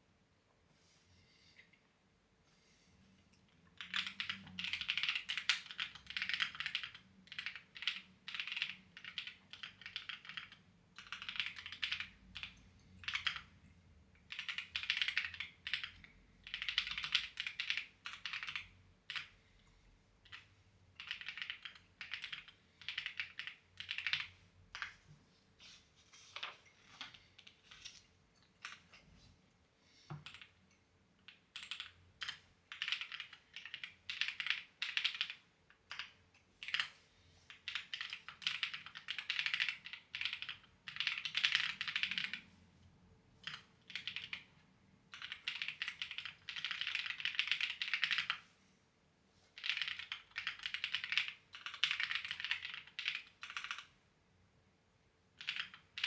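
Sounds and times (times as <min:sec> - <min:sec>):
typing on clacky keyboard: 0:03.8 - 0:13.5, 0:14.2 - 0:19.3, 0:20.2 - 0:24.8, 0:30.2 - 0:30.5, 0:31.2 - 0:36.9, 0:37.5 - 0:42.4, 0:43.4 - 0:44.5, 0:45.1 - 0:48.4, 0:49.6 - 0:53.9, 0:55.4 - 0:56.0.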